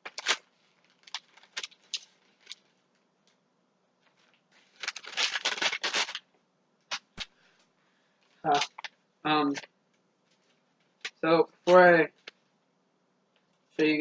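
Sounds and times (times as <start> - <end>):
packaging crinkling: 0.0 - 2.8, 4.0 - 6.3, 6.9 - 7.3, 8.4 - 9.0.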